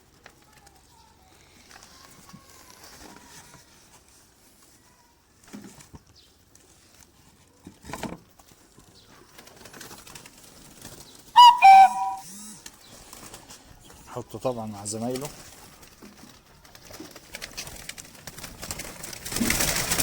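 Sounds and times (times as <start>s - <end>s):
pigeon cooing: 11.4s - 12.2s
pigeon high call: 11.4s - 12.4s.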